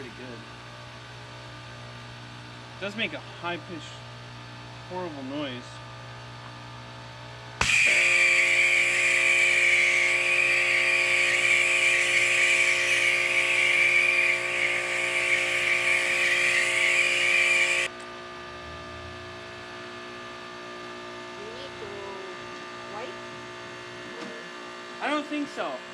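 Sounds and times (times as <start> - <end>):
pressure washer spraying shrill whine: 7.6 - 17.9.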